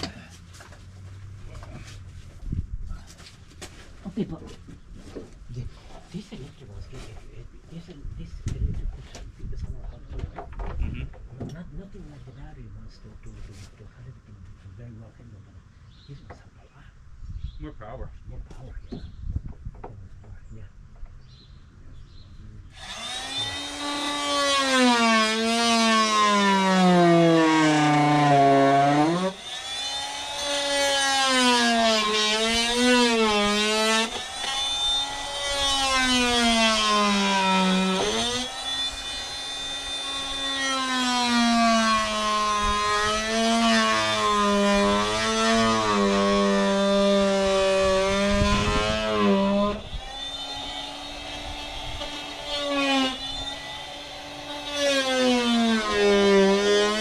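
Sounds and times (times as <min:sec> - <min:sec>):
power tool cutting wood: 0:22.7 - 0:57.0.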